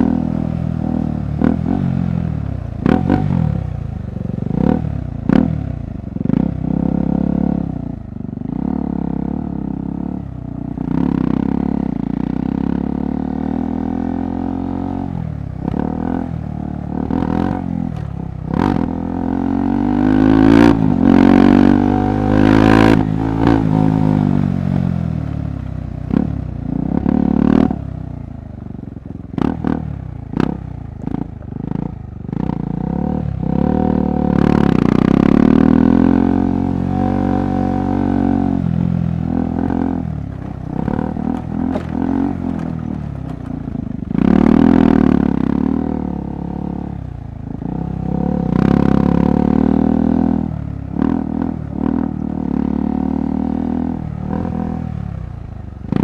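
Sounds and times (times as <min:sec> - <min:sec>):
motorcycle engine revving: 0:00.0 - 0:56.0
sharp clattering knocks: 0:39.6 - 0:44.6.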